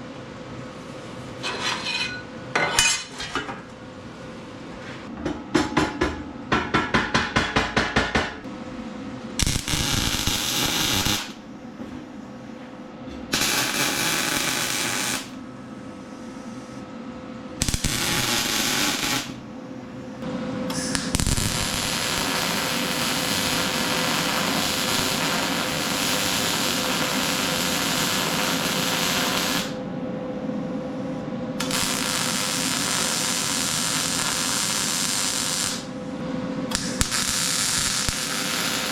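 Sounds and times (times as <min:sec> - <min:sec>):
arc welding: 0:09.4 - 0:11.4, 0:13.3 - 0:15.4, 0:17.6 - 0:19.4, 0:20.7 - 0:29.8, 0:31.6 - 0:35.9, 0:36.7 - 0:38.9.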